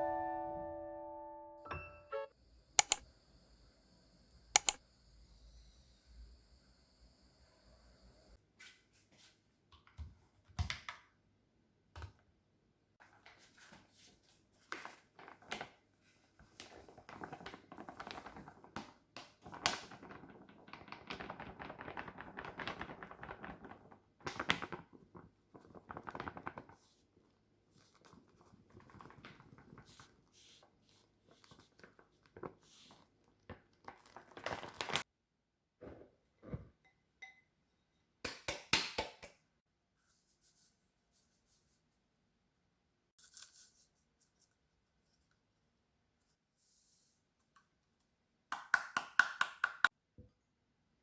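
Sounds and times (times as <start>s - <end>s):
objects knocking and clicking: 2.8s - 3.0s, 4.6s - 4.8s.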